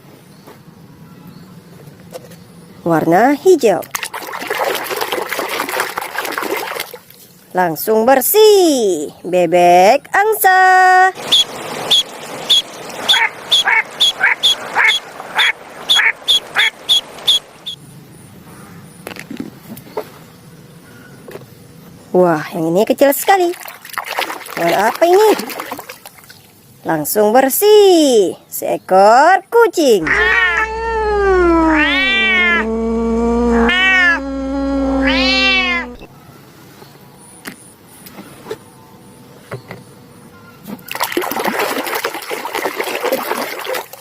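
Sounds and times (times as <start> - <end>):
duck quacking: 11.3 - 17.4, 30.0 - 32.8
cat meowing: 30.0 - 36.1.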